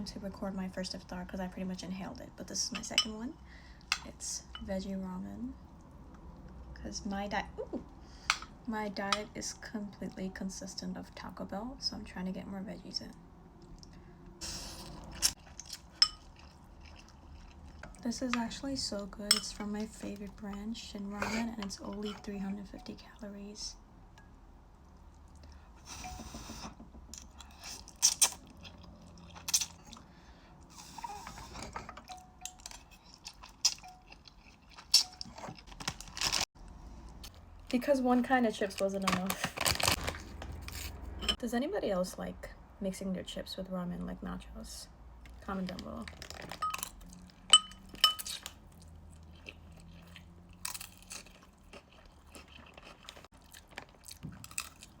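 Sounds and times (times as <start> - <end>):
chewing and crunching noodles: 14.8 - 18.1, 27.4 - 31.9, 32.5 - 36.5, 46.0 - 55.0
crunchy food chewing: 48.3 - 55.0.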